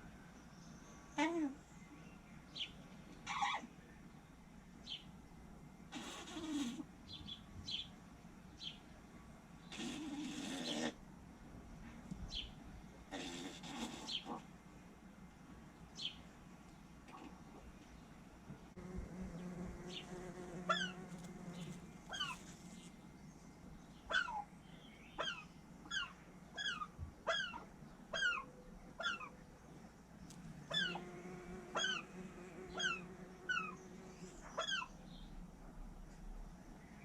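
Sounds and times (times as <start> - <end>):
raven calling: 3.2 - 3.7, 13.1 - 14.5, 24.1 - 24.5, 25.2 - 29.4, 30.7 - 31.1, 34.5 - 35.0.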